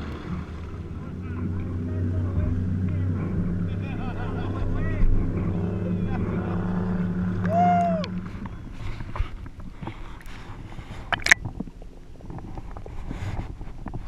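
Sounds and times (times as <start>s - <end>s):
motorboat engine humming: 0.0s - 14.0s
water noise: 0.0s - 14.0s
small knocks: 11.1s - 11.6s.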